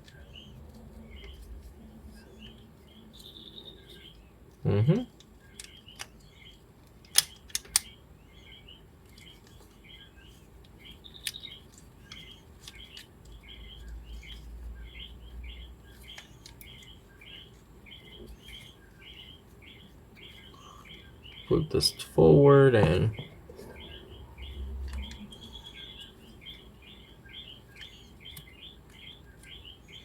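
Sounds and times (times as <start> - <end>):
bird chirping: 0.0 - 30.0
plastic toy parts clicking: 7.0 - 7.9.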